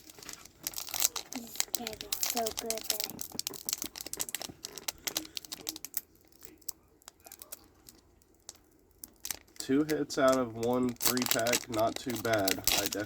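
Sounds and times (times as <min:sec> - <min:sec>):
trading cards clicking and snapping: 0:08.5 - 0:13.0.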